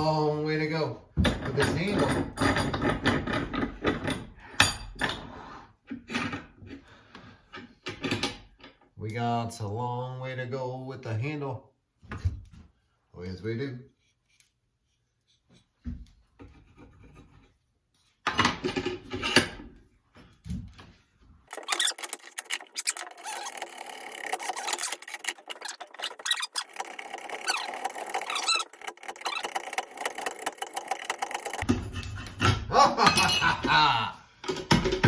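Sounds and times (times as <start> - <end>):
blade scraping wood: 21.5 - 32.6.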